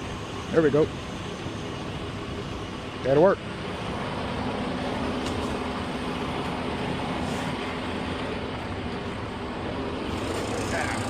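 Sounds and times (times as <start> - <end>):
vehicle engine running: 0.0 - 11.0.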